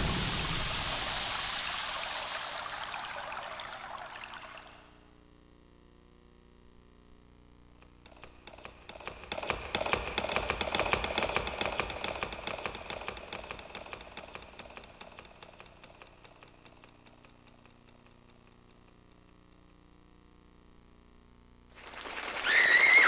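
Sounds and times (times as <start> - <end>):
dense patter of rapid clicks: 8.0 - 18.5, 21.8 - 23.0.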